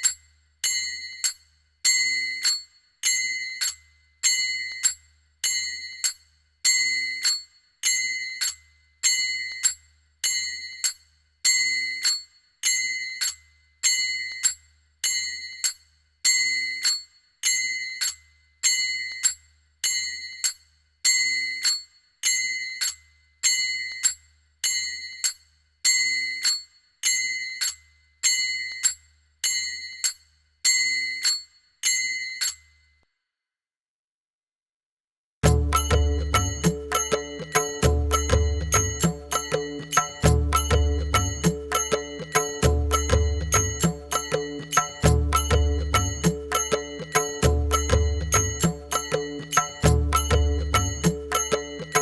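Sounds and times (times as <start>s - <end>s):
small hand cymbals clashing: 35.4s - 52.0s.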